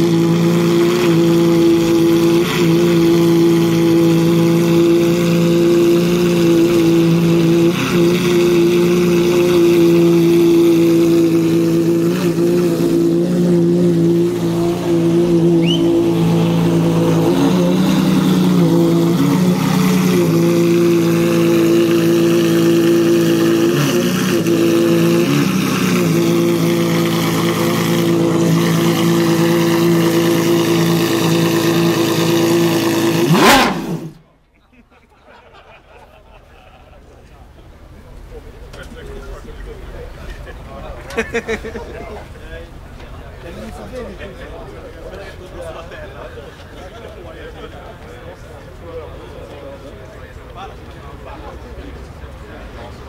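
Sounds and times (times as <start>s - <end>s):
sports car engine idling: 0.0s - 34.2s.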